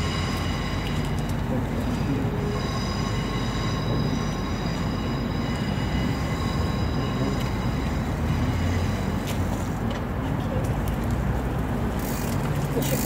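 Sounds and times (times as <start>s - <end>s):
high-pitched ringing tones: 0.0s - 9.8s
train rumbling past: 0.0s - 10.4s.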